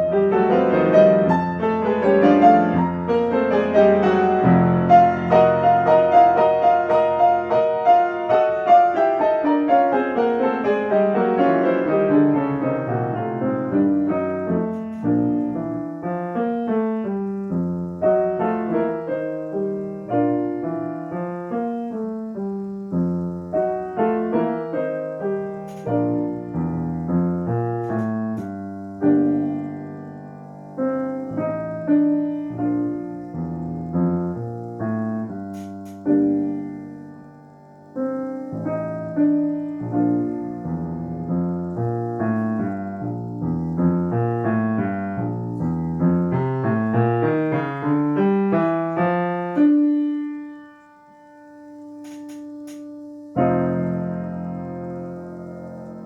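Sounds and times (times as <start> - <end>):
solo classical piano: 0.0 - 56.0.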